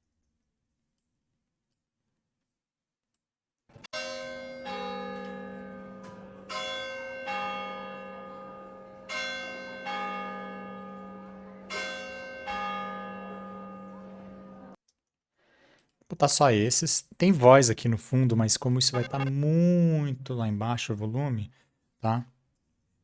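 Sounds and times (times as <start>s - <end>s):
two bells ringing: 3.9s - 14.8s.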